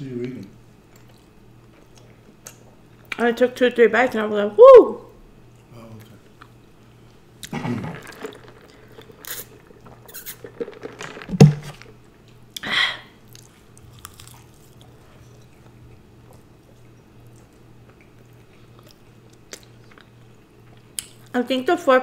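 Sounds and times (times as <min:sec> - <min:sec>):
chewing and crunching food: 0:00.2 - 0:03.2, 0:05.6 - 0:12.6, 0:13.2 - 0:21.4
loud thump: 0:11.3 - 0:11.8.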